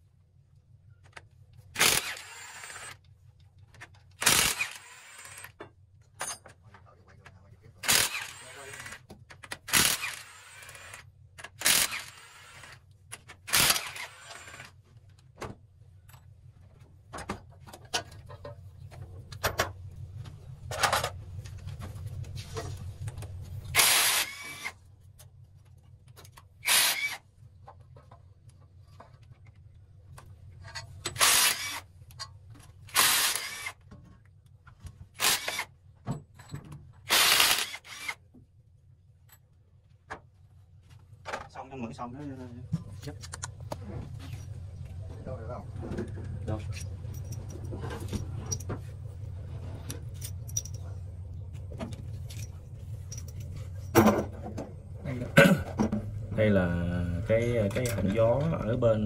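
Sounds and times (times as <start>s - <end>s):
steady low hum: 0.0s - 59.0s
impact wrench bursts: 1.8s - 3.0s, 4.2s - 5.6s, 7.8s - 12.8s, 13.4s - 14.7s, 23.7s - 24.7s, 26.6s - 27.2s, 31.1s - 31.8s, 32.9s - 33.8s, 35.2s - 35.7s, 37.1s - 38.2s.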